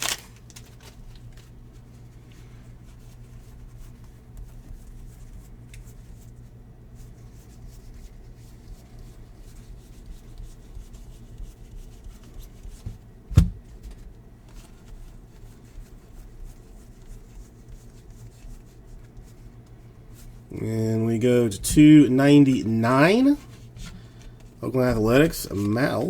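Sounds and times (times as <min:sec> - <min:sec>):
steady low hum: 0:00.0 - 0:26.0
cards rubbing and sliding: 0:20.6 - 0:26.0.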